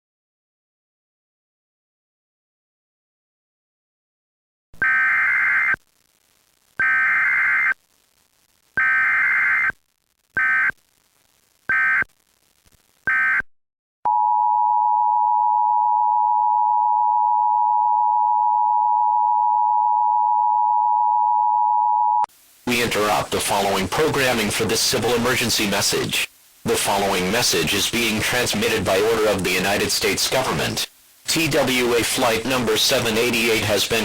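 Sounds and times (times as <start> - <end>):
digital data bursts: 4.8 - 5.8, 6.8 - 7.8, 8.8 - 9.8, 10.4 - 10.8, 11.7 - 12.2.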